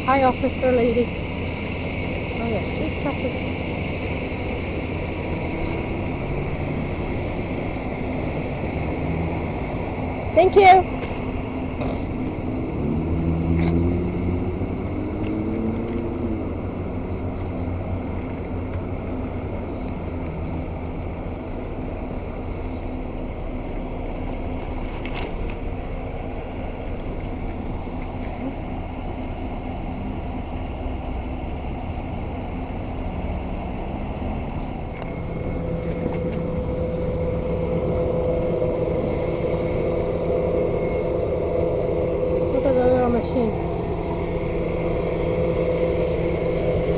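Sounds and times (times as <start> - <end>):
road traffic rumble: 0.0 - 46.9
steady machine hum: 0.0 - 46.9
vehicle speeding up: 2.5 - 19.4, 33.1 - 46.9.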